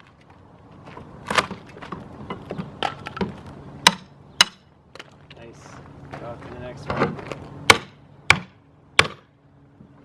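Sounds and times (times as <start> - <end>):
sharp wood cracks: 1.2 - 5.3.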